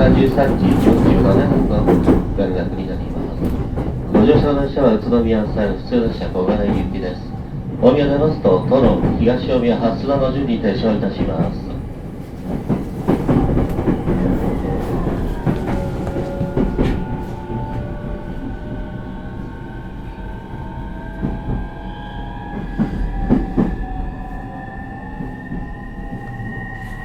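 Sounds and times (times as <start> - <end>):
wheels clacking over rail joints: 0.0 - 7.3.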